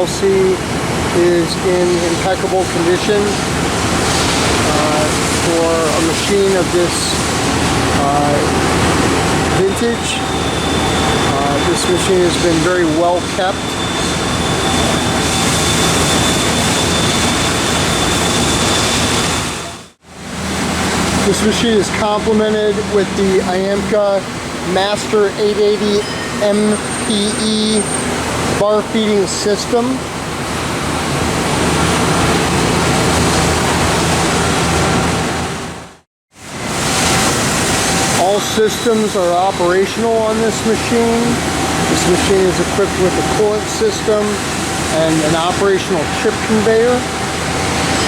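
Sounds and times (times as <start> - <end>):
machine shop rushing hiss: 0.0 - 35.6, 36.4 - 48.0
high-pitched whine: 4.0 - 30.0, 36.8 - 48.0.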